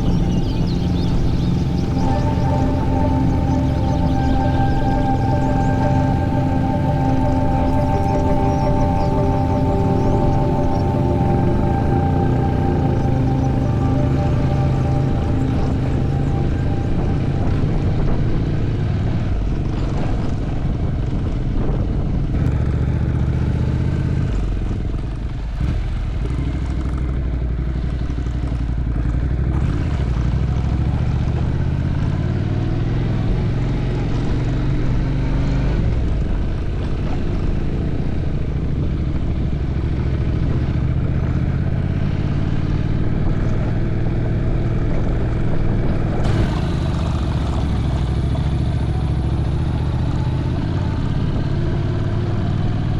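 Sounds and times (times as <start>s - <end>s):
motorbike engine running: 38.7s - 52.9s.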